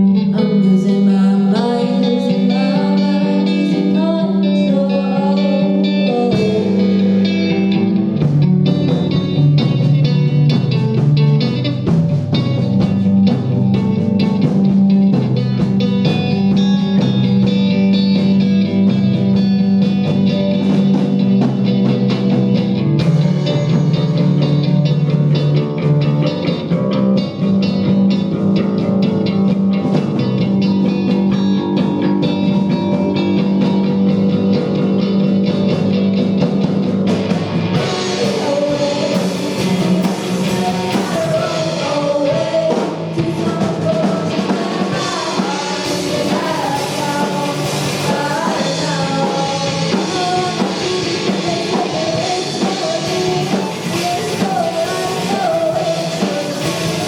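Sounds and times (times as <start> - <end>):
person singing: 0.0 - 8.0, 37.7 - 57.0
rock band playing live: 0.0 - 57.0.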